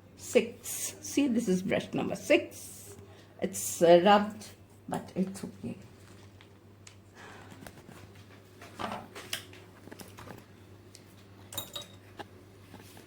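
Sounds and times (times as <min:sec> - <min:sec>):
faint clicks and rustles: 0:05.8 - 0:13.0.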